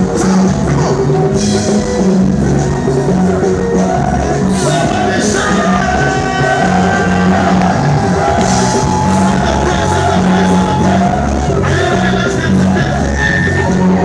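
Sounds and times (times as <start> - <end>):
live praise music: 0.0 - 14.0
congregation shouting: 3.2 - 14.0.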